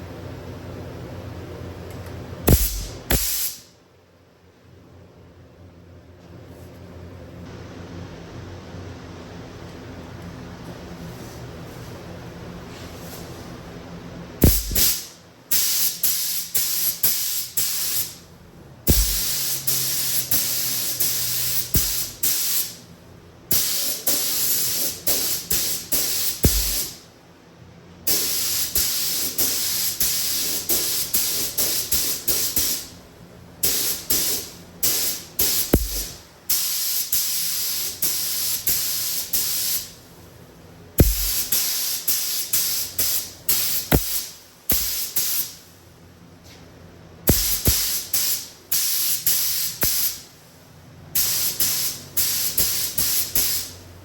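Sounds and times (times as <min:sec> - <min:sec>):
paint gun spraying hiss: 0:02.5 - 0:03.7, 0:14.4 - 0:18.2, 0:18.9 - 0:22.8, 0:23.5 - 0:27.0, 0:28.1 - 0:32.9, 0:33.6 - 0:39.9, 0:41.0 - 0:45.6, 0:47.3 - 0:50.2, 0:51.2 - 0:53.8.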